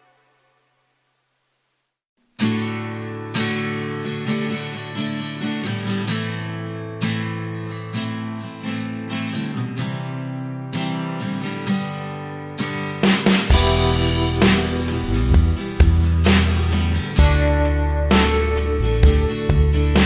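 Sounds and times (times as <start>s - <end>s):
acoustic guitar strumming chords: 2.4s - 20.0s
background music: 13.0s - 20.0s.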